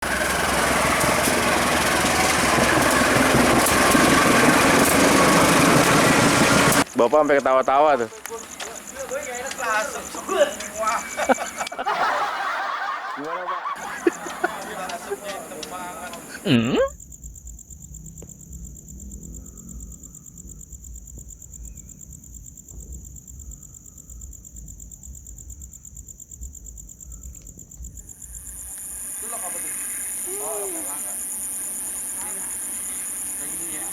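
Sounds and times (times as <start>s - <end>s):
diesel locomotive engine drone: 0.0s - 12.4s, 13.2s - 16.6s, 28.4s - 33.9s
crickets trilling: 0.0s - 33.9s.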